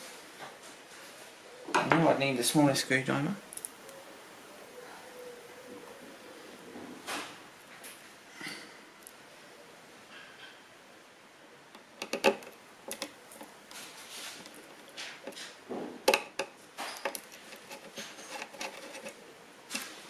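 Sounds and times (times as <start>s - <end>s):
small clicks taps and rustles: 11.7s - 15.5s.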